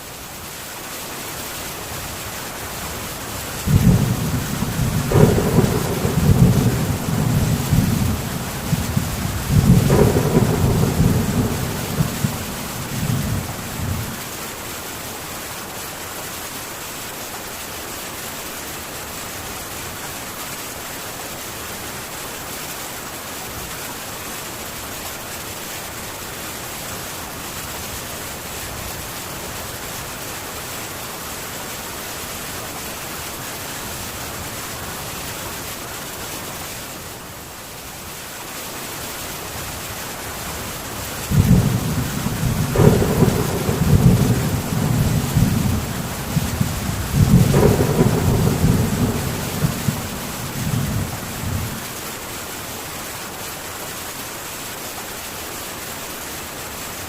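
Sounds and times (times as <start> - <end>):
rain drumming on tin roof: 0.0 - 57.0
thunder rumbling and cracking: 3.6 - 14.2, 41.2 - 51.9.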